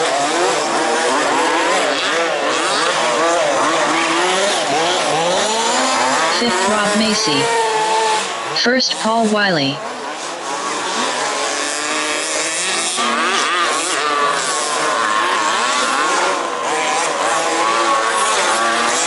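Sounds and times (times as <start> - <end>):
rc car engines revving: 0.0 - 8.6, 9.8 - 19.0.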